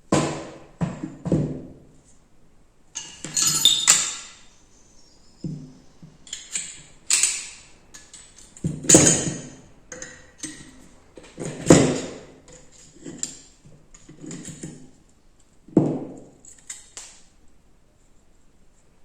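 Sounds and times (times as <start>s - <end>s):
metallic tool clatter: 3.0s - 4.4s
ringing metal strikes: 3.4s - 4.3s.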